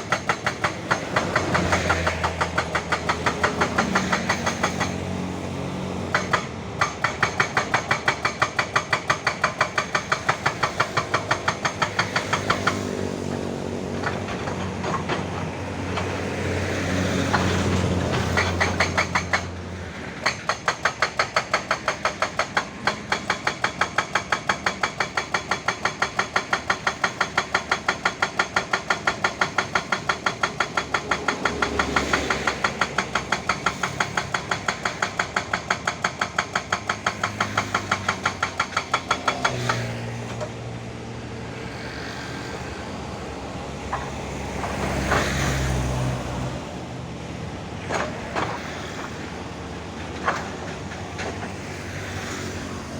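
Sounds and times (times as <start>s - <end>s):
hydraulic rock breaker hammering: 0.0s - 40.6s, 47.8s - 49.3s.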